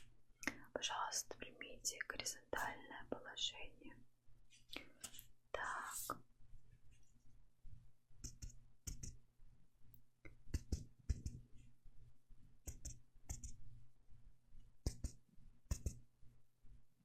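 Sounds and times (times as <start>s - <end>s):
fingertips tapping: 8.2s - 9.2s, 10.2s - 11.7s, 12.6s - 13.6s, 14.8s - 16.1s.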